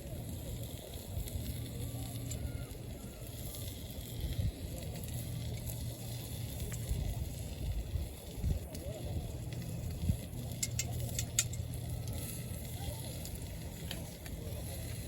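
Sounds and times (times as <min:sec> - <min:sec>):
campfire crackling: 0:00.0 - 0:15.0
fire popping: 0:00.0 - 0:15.0
low uneven rumble: 0:00.0 - 0:15.0.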